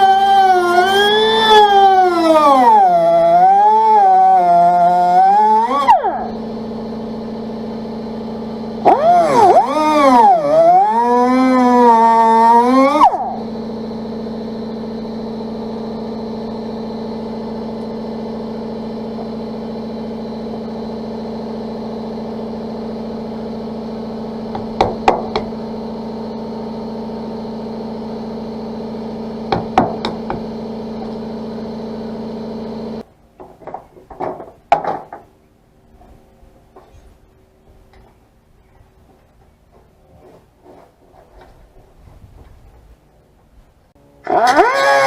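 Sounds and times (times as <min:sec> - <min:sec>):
die grinder grinding: 0:00.0 - 0:19.3, 0:44.2 - 0:45.0
sharp knocks: 0:24.5 - 0:25.5, 0:29.5 - 0:30.5, 0:33.4 - 0:35.3.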